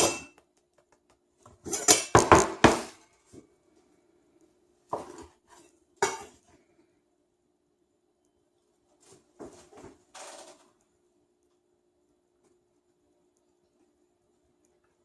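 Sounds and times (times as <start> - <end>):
dishes and cutlery clinking: 0.0 - 0.4, 1.6 - 3.0, 6.0 - 6.4.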